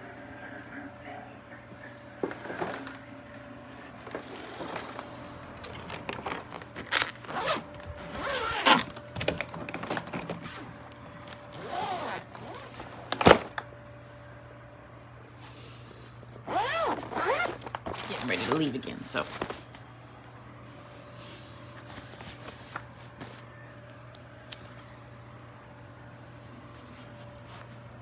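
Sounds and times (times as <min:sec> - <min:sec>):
suitcase being handled: 0:02.2 - 0:03.0, 0:04.0 - 0:13.6, 0:16.5 - 0:18.6, 0:19.2 - 0:19.7.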